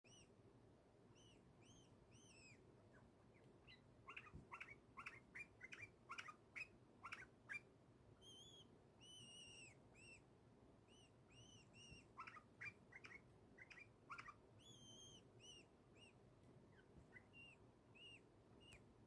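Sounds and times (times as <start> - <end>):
bird chirping and whistling: 8.2 - 10.2, 10.9 - 16.1, 17.2 - 18.2.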